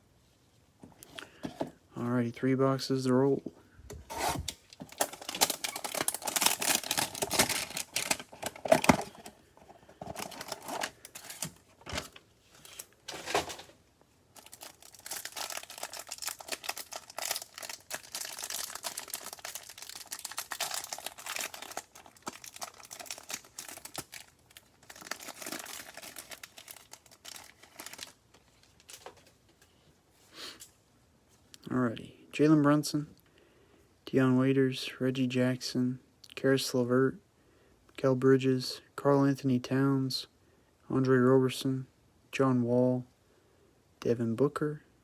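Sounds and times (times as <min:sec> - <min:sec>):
packaging crinkling and tearing: 0:04.1 - 0:13.7, 0:14.3 - 0:29.4.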